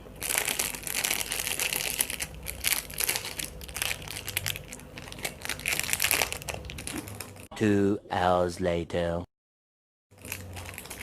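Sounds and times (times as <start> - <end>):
plastic packaging crinkling: 0.2 - 7.5, 10.1 - 11.0.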